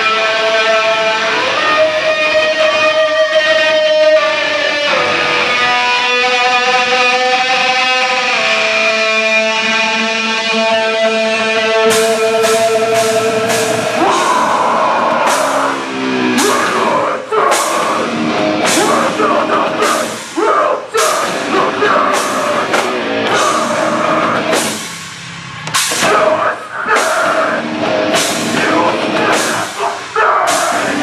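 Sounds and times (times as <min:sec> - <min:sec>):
held guitar notes: 0:00.0 - 0:31.0
rock band playing: 0:00.0 - 0:31.0
crashing cymbal hits: 0:11.9 - 0:16.6, 0:22.2 - 0:26.2, 0:27.0 - 0:29.8.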